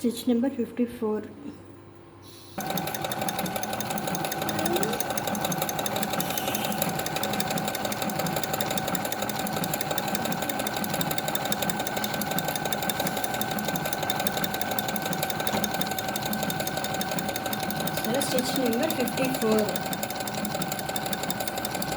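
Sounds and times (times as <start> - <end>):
sewing machine running: 2.6 - 21.9.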